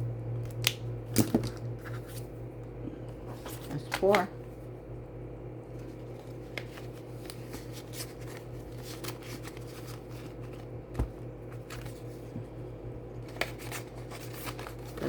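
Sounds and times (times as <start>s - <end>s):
steady low hum: 0.0s - 15.0s
paper rustling: 5.8s - 12.3s, 13.2s - 15.0s.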